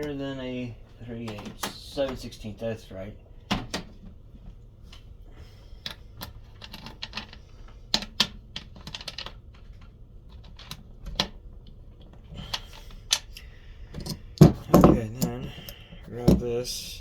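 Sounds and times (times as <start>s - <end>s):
small hand tools clicking: 12.4s - 16.4s.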